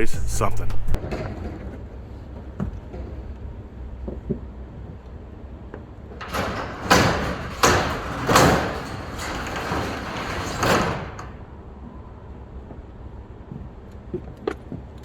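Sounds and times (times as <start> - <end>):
metal roll-up door rattling down: 5.8 - 11.6
loud metal bangs: 6.2 - 11.5.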